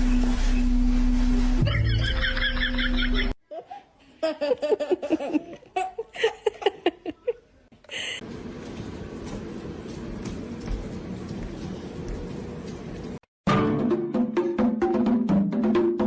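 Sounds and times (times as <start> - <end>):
person laughing: 1.6 - 8.1.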